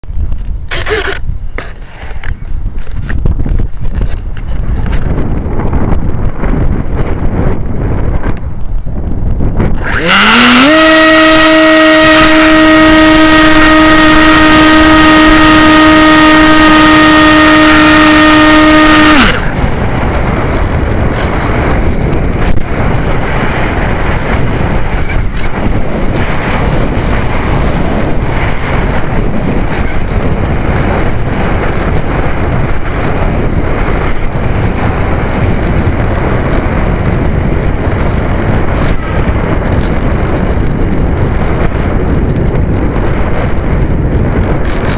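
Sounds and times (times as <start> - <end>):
wind buffeting microphone: 0.0 - 44.9
electric motor and propeller whining: 0.3 - 5.7, 9.4 - 44.9.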